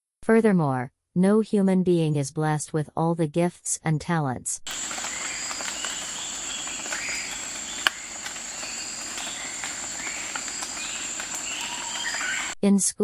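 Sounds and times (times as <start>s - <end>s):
insects trilling: 4.7s - 12.6s.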